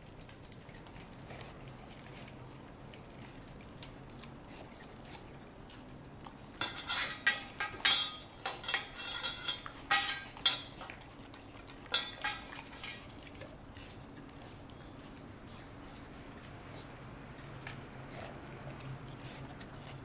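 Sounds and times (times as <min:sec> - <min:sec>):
dog food bowl clattering: 0:06.6 - 0:13.4.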